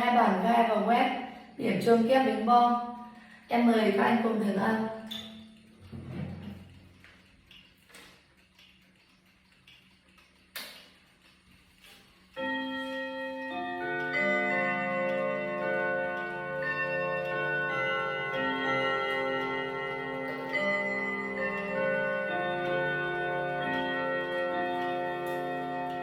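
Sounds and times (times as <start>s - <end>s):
clock chime melody on gong rods: 12.4s - 26.0s.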